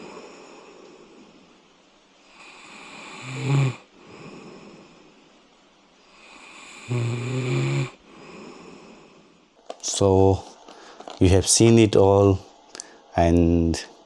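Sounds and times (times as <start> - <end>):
man snoring: 0.0 - 1.3, 2.3 - 5.1, 6.1 - 9.4
quiet breathing: 0.0 - 11.4, 12.3 - 13.2.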